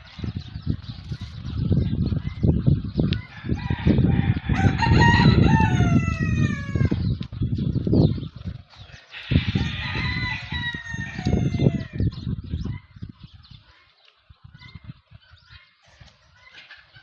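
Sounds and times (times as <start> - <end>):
rooster crowing: 3.3 - 7.0, 9.3 - 12.0.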